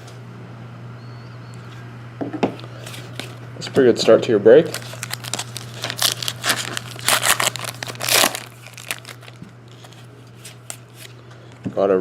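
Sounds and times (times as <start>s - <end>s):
low steady hum: 0.0s - 12.0s
wrapper crinkling and tearing: 4.6s - 11.1s.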